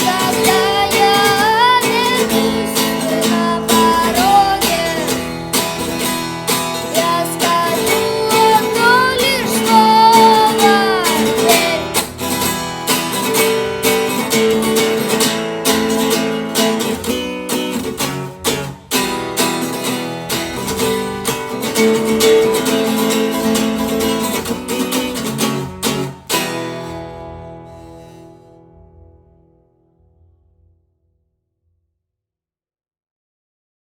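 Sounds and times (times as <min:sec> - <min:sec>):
person singing: 0:00.0 - 0:12.3
acoustic guitar strumming: 0:00.0 - 0:30.9.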